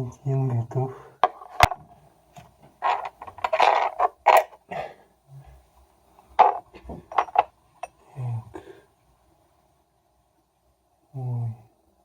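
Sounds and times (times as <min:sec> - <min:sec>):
scraping and rustling: 0:02.4 - 0:04.6, 0:06.2 - 0:07.5.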